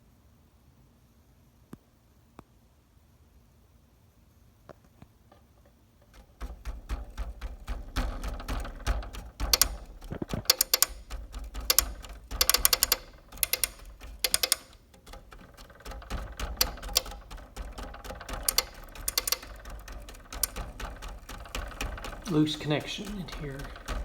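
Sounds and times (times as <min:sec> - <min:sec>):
relay clicking: 0:06.0 - 0:24.0.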